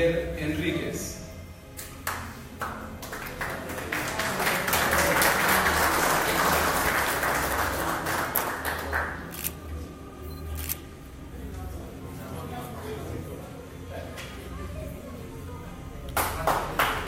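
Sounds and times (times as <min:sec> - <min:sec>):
audience applauding: 0:02.1 - 0:09.4, 0:16.2 - 0:17.0.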